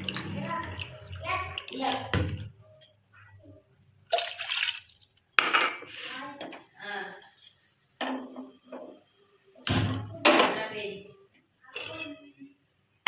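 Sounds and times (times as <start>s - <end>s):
dishes and utensils clattering: 5.4s - 6.6s, 11.7s - 12.3s.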